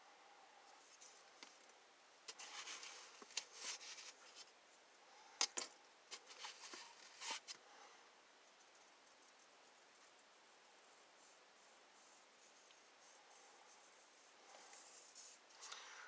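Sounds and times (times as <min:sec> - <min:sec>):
rustling and light scraping: 0:00.7 - 0:04.6, 0:06.1 - 0:07.6, 0:08.5 - 0:15.9.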